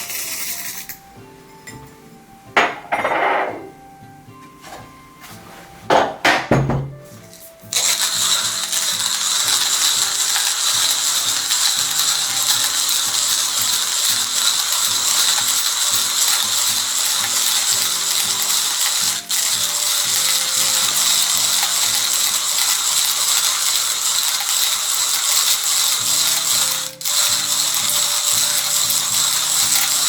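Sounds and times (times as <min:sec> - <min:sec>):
hand grinder grinding coffee beans: 0:00.0 - 0:01.0, 0:07.2 - 0:30.0.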